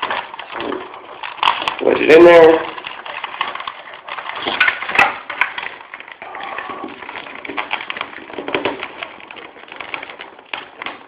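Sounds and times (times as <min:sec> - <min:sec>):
crackly rustling: 0:00.0 - 0:11.0.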